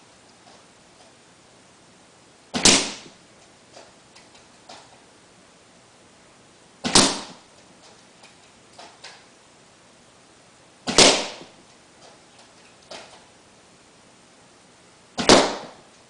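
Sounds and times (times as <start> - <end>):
airsoft rifle shots: 2.5 - 3.2, 6.8 - 7.4, 10.8 - 11.6, 15.2 - 15.9.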